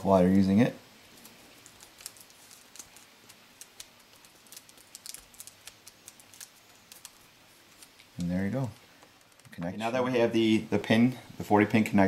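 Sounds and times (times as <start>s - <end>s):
adhesive tape ticks and crinkles: 1.1s - 9.7s.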